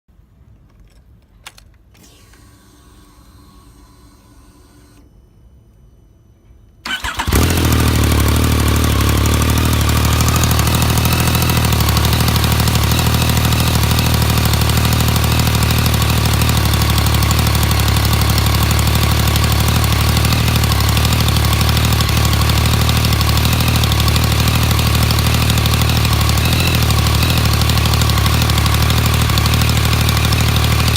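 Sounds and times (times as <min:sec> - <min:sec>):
motorcycle engine idling: 0:06.9 - 0:30.9.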